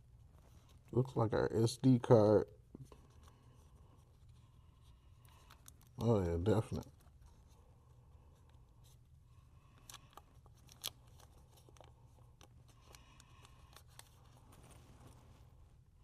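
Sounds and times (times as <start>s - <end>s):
low room hum: 0.0s - 16.0s
packaging clicks and crinkles: 9.8s - 14.7s.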